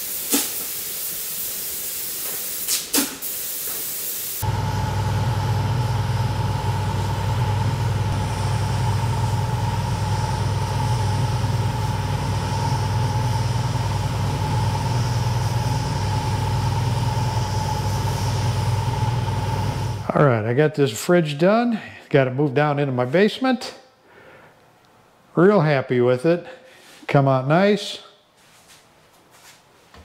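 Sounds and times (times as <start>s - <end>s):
spray gun hissing: 0.0s - 4.8s, 8.1s - 20.0s
refrigerator compressor humming: 4.4s - 20.1s.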